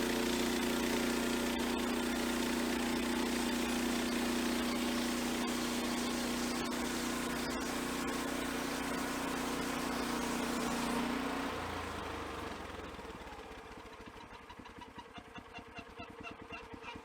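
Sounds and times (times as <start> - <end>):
sawmill engine running then idling: 0.0 - 17.0.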